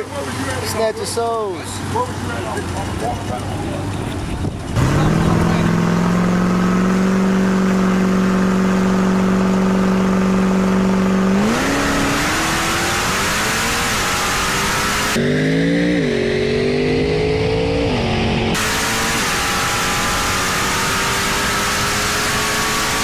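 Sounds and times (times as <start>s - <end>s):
racing car engine revving: 1.7s - 23.0s.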